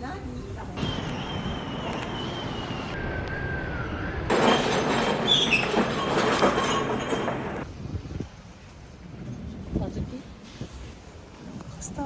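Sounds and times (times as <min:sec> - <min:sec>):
train rumbling on rails: 0:00.8 - 0:03.0, 0:04.3 - 0:07.8
train wheels squealing: 0:00.8 - 0:03.0, 0:04.3 - 0:07.6.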